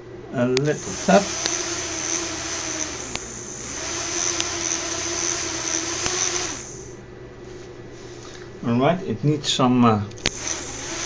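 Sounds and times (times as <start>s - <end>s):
small electric motors whirring: 0.6s - 7.0s, 10.2s - 11.0s.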